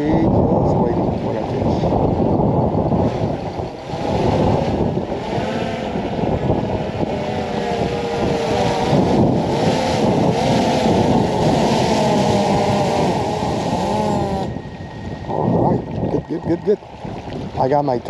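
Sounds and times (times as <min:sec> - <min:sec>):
wind buffeting microphone: 0:00.0 - 0:18.0
faint wavering whistle: 0:14.5 - 0:16.6.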